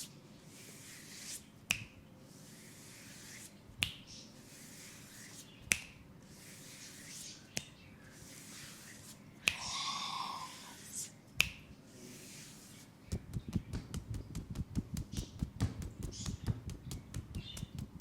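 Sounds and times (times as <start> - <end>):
hands slapping skin: 1.7 - 2.0, 3.8 - 4.1, 5.6 - 6.0, 9.4 - 11.7, 13.1 - 18.0.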